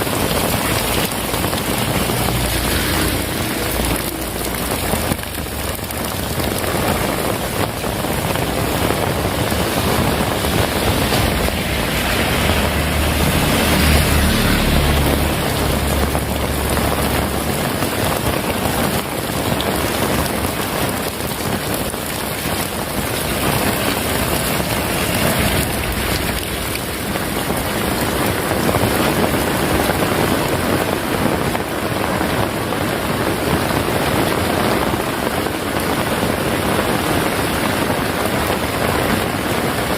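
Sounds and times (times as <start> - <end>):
heavy rain falling: 0.0 - 39.9
low rumble: 0.2 - 29.0.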